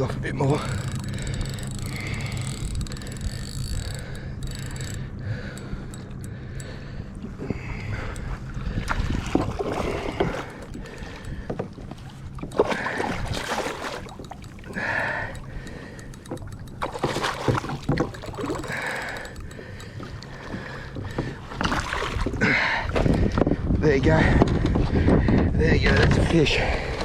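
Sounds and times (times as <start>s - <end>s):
water sloshing around kayak: 0.0s - 25.3s
sharp clicks and knocks: 0.2s - 6.8s, 9.4s - 21.7s
wind on microphone: 22.1s - 26.4s.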